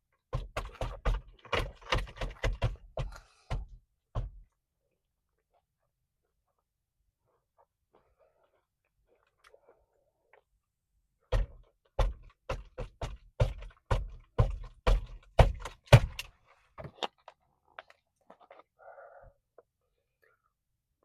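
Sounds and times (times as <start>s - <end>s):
crunchy chewing: 16.9s - 20.5s.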